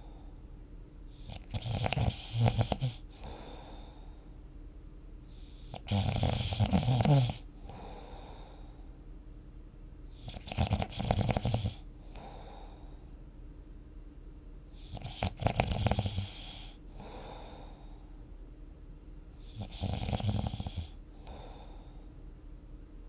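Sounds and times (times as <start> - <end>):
loud rattling snores: 1.3 - 3.4, 5.7 - 7.9, 10.2 - 12.3, 14.9 - 17.2, 19.5 - 21.4
soft breath: 3.0 - 4.5, 7.6 - 9.0, 12.0 - 13.2, 16.4 - 18.3, 20.9 - 22.2.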